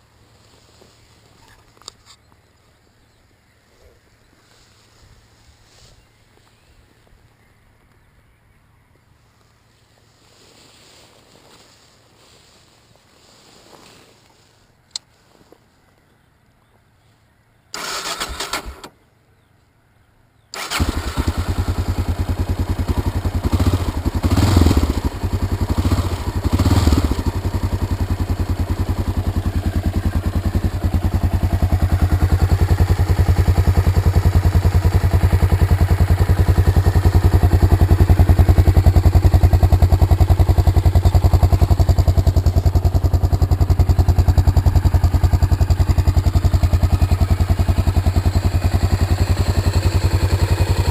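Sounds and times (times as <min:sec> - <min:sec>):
engine cranking: 0:17.8 - 0:18.9, 0:20.6 - 0:21.5
motorcycle engine idling: 0:20.6 - 0:50.9
motorcycle engine revving: 0:20.6 - 0:50.9.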